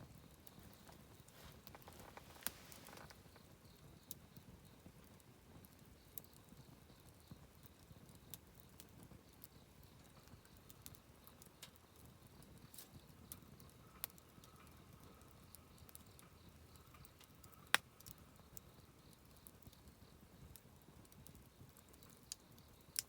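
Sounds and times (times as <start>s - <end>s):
campfire crackling and popping: 0.0s - 23.0s
low rumble of burning: 0.0s - 23.0s.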